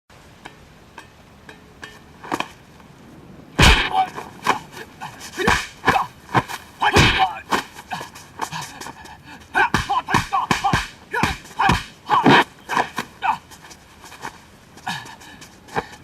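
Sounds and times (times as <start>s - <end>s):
punch and kick impacts: 3.6s - 4.6s, 5.4s - 7.7s, 9.6s - 13.0s
fighters shouting and grunting: 3.6s - 13.6s.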